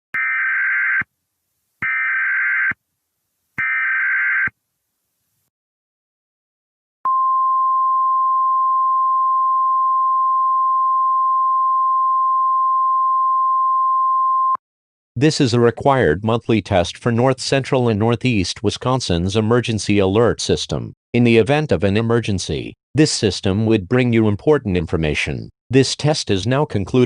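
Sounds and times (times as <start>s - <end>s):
steady alarm tone: 1.8s - 2.8s, 3.6s - 4.5s.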